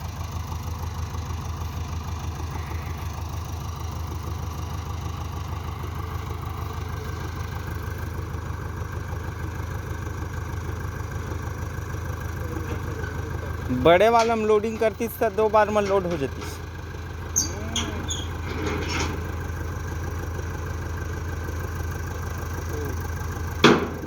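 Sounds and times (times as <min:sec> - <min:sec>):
diesel engine running at low revs: 0:00.0 - 0:24.0.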